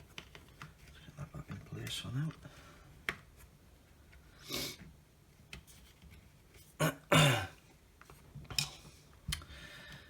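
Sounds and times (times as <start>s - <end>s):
man clearing his throat: 6.8s - 7.6s.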